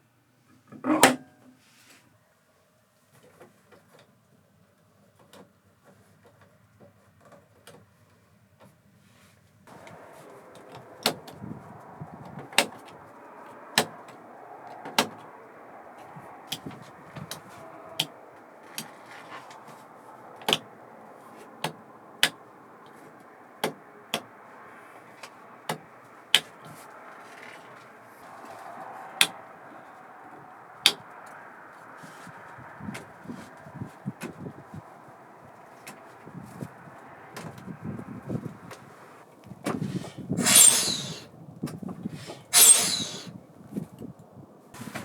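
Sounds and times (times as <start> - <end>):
backhoe loader running: 9.7 - 23.2
sharp metallic clanks: 40.4 - 41.2, 42.4 - 43.3.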